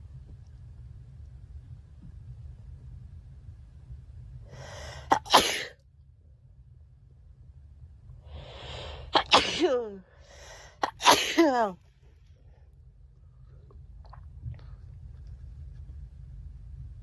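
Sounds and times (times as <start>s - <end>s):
girl sneezing: 5.1s - 5.7s, 9.2s - 10.0s, 10.8s - 11.8s.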